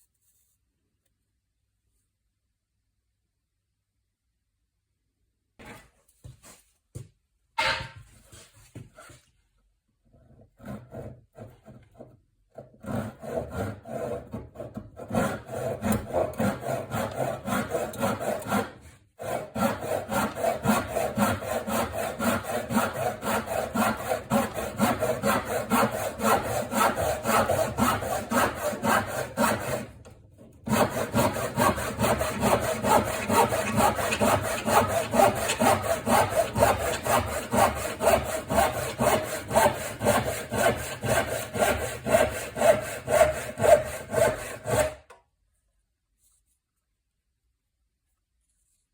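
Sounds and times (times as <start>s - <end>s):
handsaw cutting wood: 10.6s - 12.0s, 12.6s - 30.0s, 30.6s - 45.1s.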